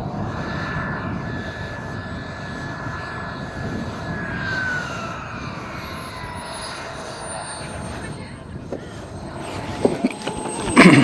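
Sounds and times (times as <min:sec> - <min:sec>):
low wind rumble: 0:00.0 - 0:11.0
model jet whine flying past: 0:00.0 - 0:11.0.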